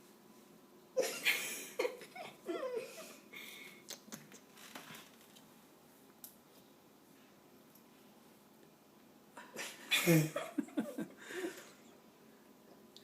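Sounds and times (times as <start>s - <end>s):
person laughing softly: 9.4s - 11.9s.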